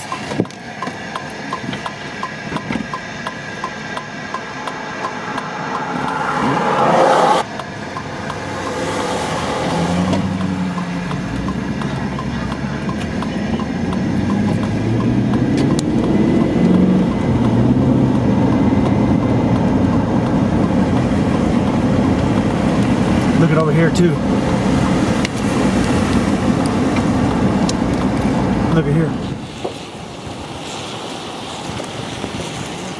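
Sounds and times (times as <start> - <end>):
road noise: 0.0 - 32.9
vehicle engine: 0.0 - 32.9
loud rush of noise: 2.3 - 18.4.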